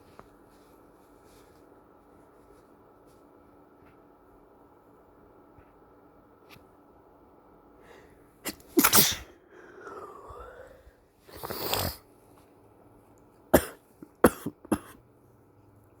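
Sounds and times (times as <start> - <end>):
man sneezing: 8.5 - 9.3.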